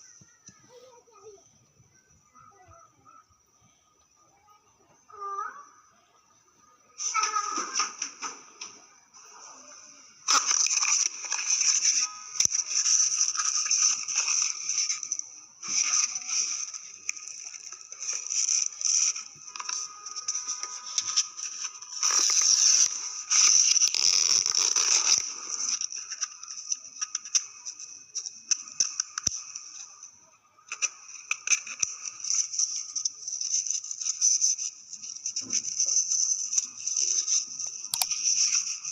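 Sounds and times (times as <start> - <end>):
small clicks and taps: 28.2 - 29.8.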